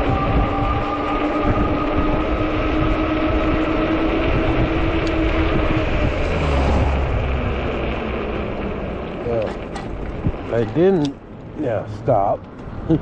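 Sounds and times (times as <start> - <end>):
electric bike motor hum: 0.0 - 11.6
wind buffeting microphone: 0.0 - 13.0.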